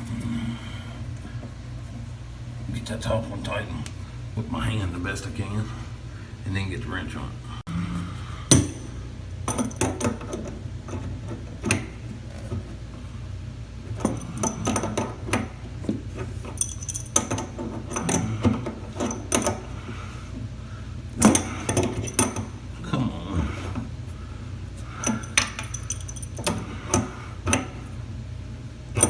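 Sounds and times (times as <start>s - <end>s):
wrench clinking on metal: 16.4s - 18.3s, 21.2s - 22.5s, 25.0s - 27.6s.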